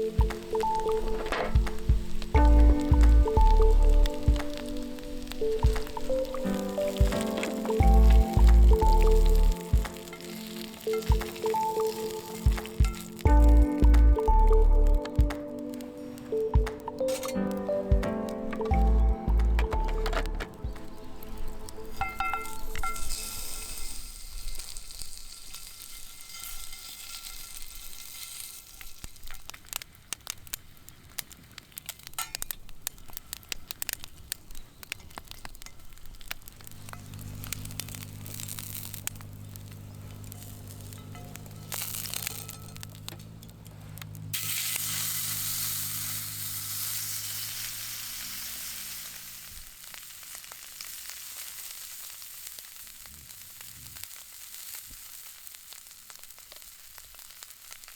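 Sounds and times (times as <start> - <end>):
food sizzling in frying pan: 0.0 - 19.6, 20.5 - 57.9
campfire crackling pops: 0.0 - 57.9
low steady hum: 1.3 - 4.4, 12.5 - 15.3.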